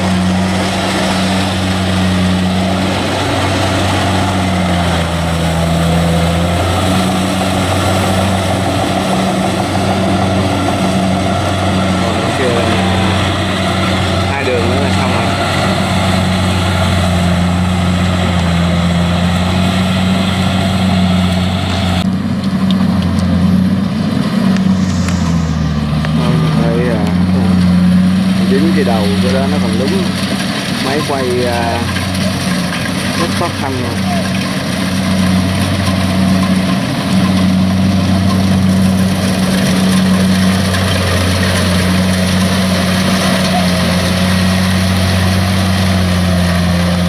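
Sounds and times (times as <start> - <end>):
diesel engine humming: 0.0 - 47.0
high-pitched mechanical noise: 24.4 - 30.2.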